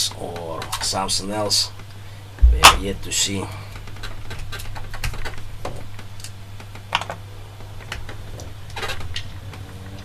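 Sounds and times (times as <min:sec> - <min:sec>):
steady low hum: 0:01.0 - 0:06.6.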